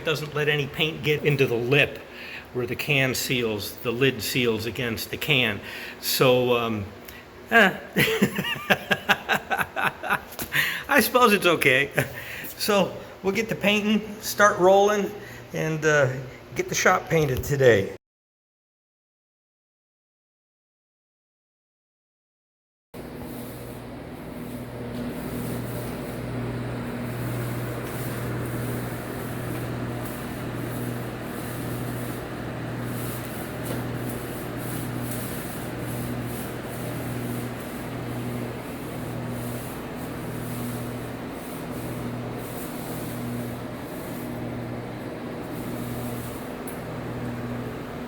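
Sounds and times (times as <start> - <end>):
paint roller rubbing on wall: 8.0 - 10.4, 23.0 - 48.0
steady low hum: 23.0 - 48.0.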